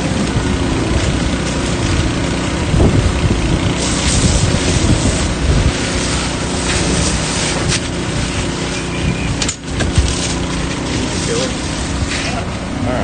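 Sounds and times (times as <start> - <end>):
wind buffeting the microphone: 0.0 - 10.2
engine running: 0.0 - 13.0.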